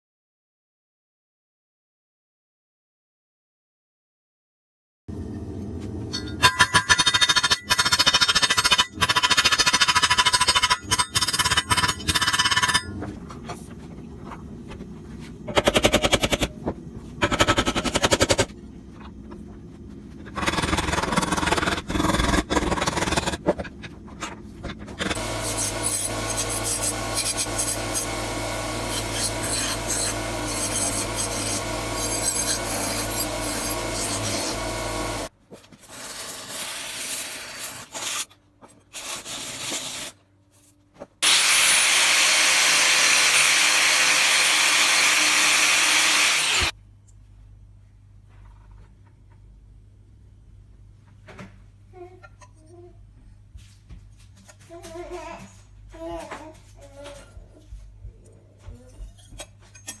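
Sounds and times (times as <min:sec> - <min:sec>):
steady motor hum: 0:16.2 - 0:35.3.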